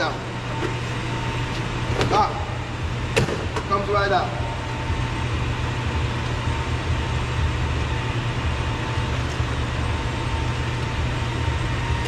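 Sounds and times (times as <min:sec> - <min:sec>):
low rumble and hiss: 0:00.0 - 0:12.0.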